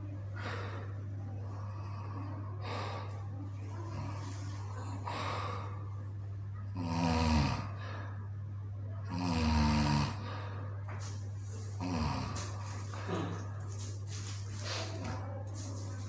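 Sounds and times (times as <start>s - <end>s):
soft breaths: 0.0s - 6.8s, 10.0s - 16.0s
steady low hum: 0.0s - 16.0s
person snoring: 6.7s - 7.8s, 9.1s - 10.4s, 11.8s - 13.0s.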